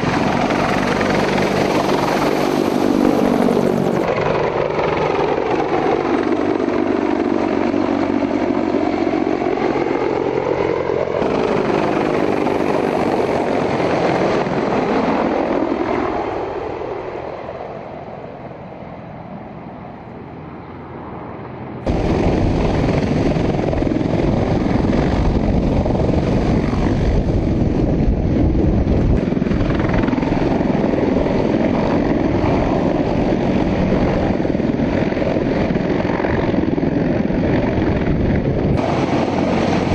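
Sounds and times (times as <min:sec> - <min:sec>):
close helicopter running: 0:00.0 - 0:39.9
helicopter passing by: 0:00.0 - 0:39.9.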